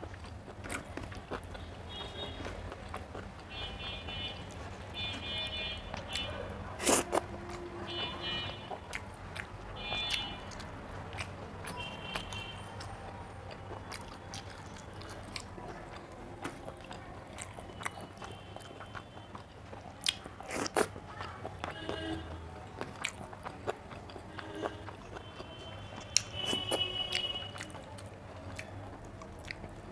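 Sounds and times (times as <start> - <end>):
crisp chewing crunches: 0.0 - 5.3, 5.9 - 7.6, 8.7 - 22.0, 22.6 - 29.9
mouth clicks: 6.0 - 7.2.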